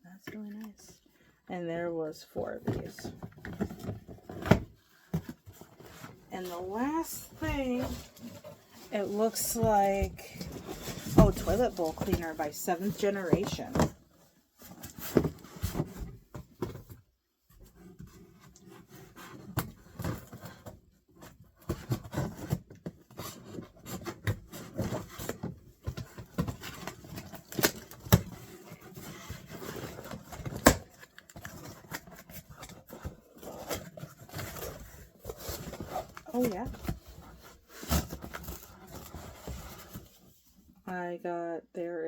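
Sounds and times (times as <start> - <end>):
packaging rubbing and scraping: 3.4 - 13.7, 17.7 - 40.6.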